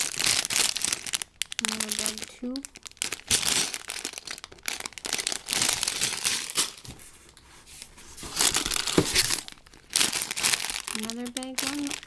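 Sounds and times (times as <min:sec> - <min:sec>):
plastic bags crinkling: 0:00.0 - 0:12.0.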